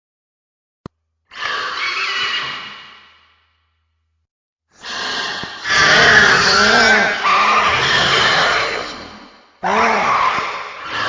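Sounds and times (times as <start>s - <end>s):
monster roar: 4.8s - 11.0s.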